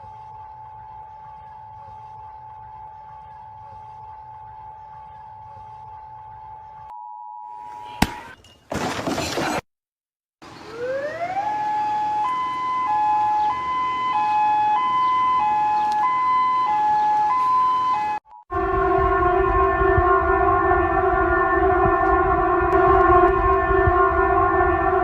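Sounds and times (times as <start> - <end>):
electronic siren two-tone: 0.0 - 8.0, 10.8 - 25.0
steady tone: 18.5 - 25.0.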